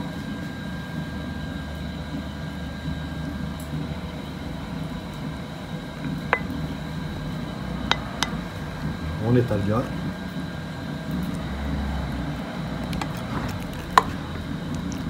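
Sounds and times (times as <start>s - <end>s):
low background hum: 0.0s - 15.0s
utensil clinking against dish: 6.3s - 6.6s, 7.9s - 8.4s.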